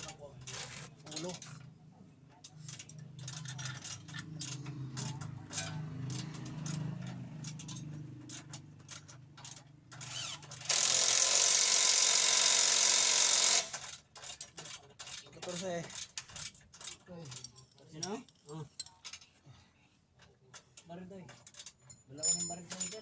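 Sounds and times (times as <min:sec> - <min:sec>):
metal hand tools clinking: 0:21.4 - 0:23.0.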